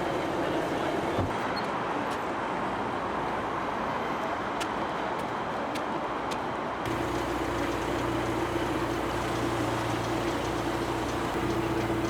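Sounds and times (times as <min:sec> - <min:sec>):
mechanical hum: 0:06.9 - 0:12.0.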